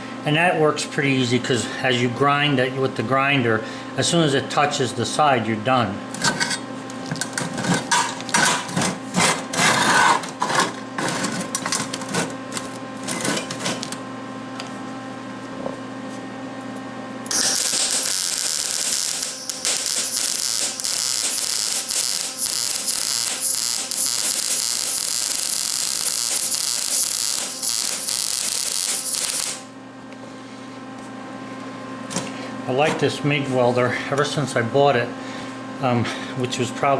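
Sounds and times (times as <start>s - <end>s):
welder crackling and hissing: 17.3s - 29.7s.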